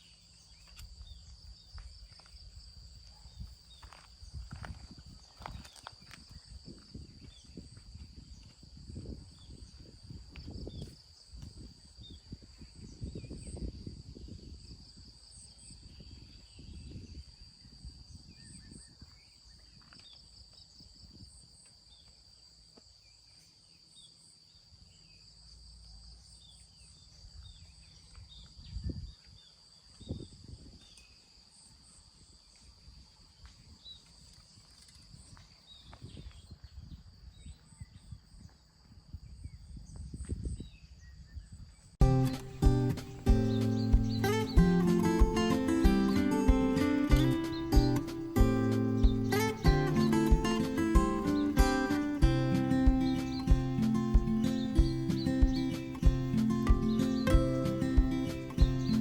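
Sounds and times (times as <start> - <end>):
insects trilling: 42.0 - 59.0.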